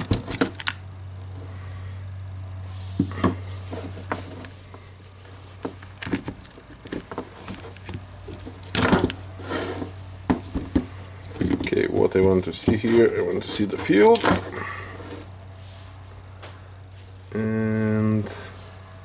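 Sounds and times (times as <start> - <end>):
steady low hum: 0.0 - 19.0
rattling scrape: 8.4 - 10.0.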